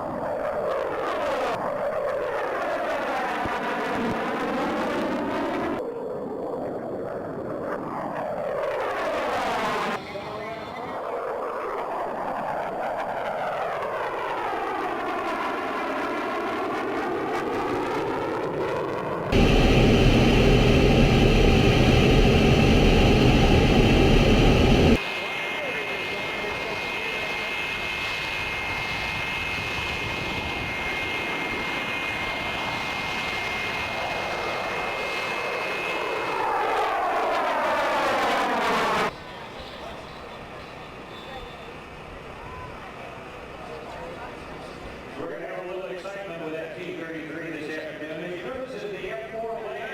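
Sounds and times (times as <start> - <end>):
jet engines roaring: 19.0 - 28.7.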